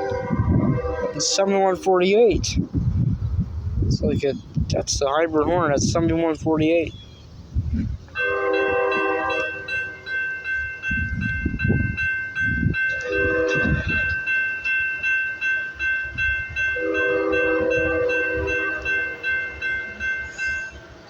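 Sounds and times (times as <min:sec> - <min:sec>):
locomotive air horn blasts: 0:00.0 - 0:01.9, 0:08.1 - 0:10.1, 0:13.0 - 0:14.2, 0:16.7 - 0:21.0
passing train rumbling: 0:00.0 - 0:21.0
steady high ringing tone: 0:08.2 - 0:21.0.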